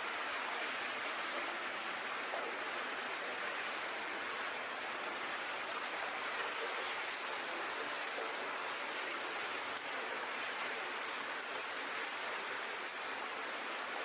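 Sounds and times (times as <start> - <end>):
water rushing through a tunnel: 0.0 - 14.0.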